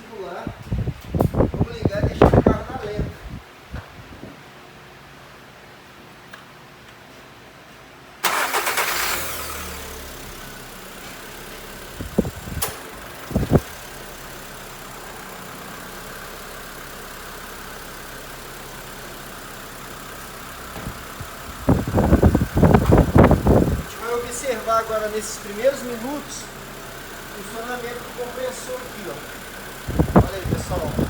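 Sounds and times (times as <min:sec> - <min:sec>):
car engine starting and idling: 0:08.2 - 0:31.0.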